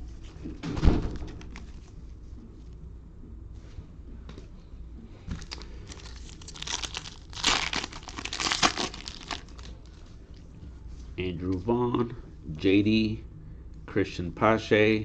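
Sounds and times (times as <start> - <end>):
foil wrapper tearing and crinkling: 5.4 - 9.8.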